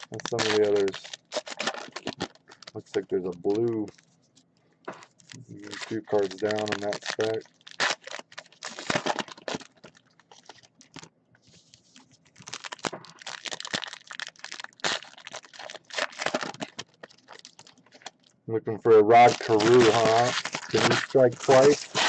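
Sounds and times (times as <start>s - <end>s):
card wrappers crinkling: 0.0s - 4.1s, 4.9s - 18.3s, 18.9s - 22.0s
cards being shuffled: 19.1s - 22.0s.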